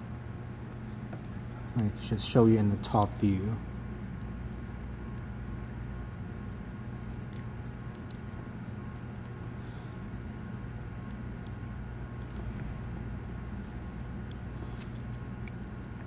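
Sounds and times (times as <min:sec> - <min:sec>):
steady low hum: 0:00.0 - 0:16.0
small clicks of wires handled: 0:00.7 - 0:01.8, 0:06.9 - 0:13.0, 0:13.6 - 0:16.0.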